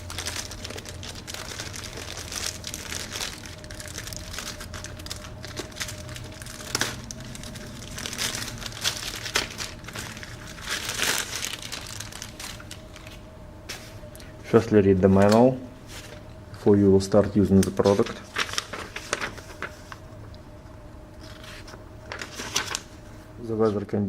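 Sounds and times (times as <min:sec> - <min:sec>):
packaging crinkling and rustling: 0:00.0 - 0:13.3, 0:17.4 - 0:20.0, 0:21.2 - 0:23.1.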